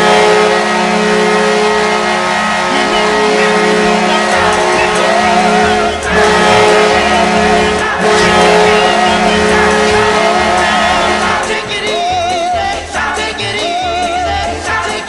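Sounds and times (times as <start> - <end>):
goal horn blasts: 0.0 - 11.6
song with singing: 2.6 - 15.0.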